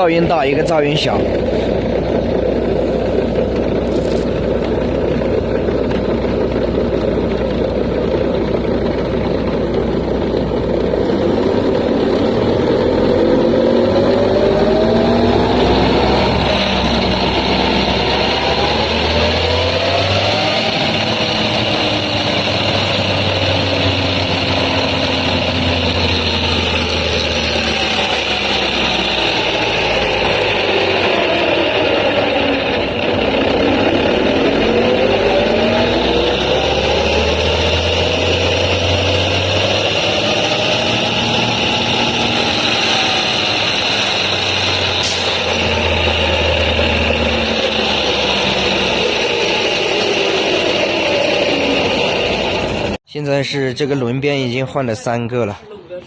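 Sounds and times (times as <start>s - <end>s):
heavy truck running: 0.0s - 56.0s.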